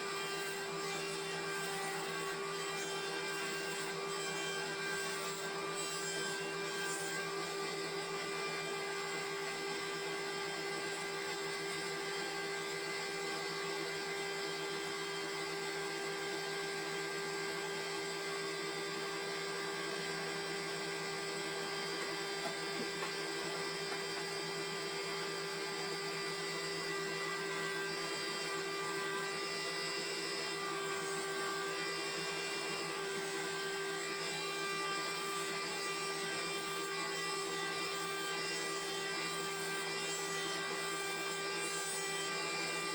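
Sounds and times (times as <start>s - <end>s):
sawmill machine hum: 0.0s - 42.9s.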